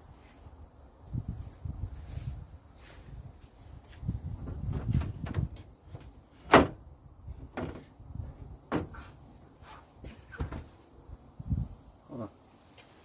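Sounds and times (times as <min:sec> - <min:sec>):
rustling and scraping: 0:01.4 - 0:10.9.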